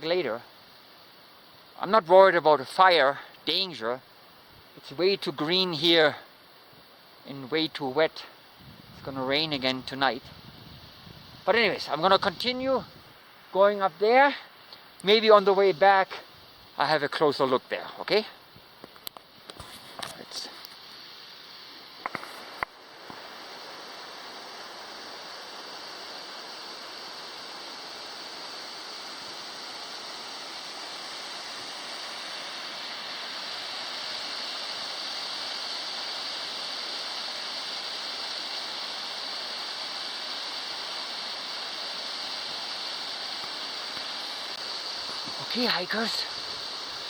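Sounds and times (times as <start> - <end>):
waterfall rushing: 21.3 - 47.0.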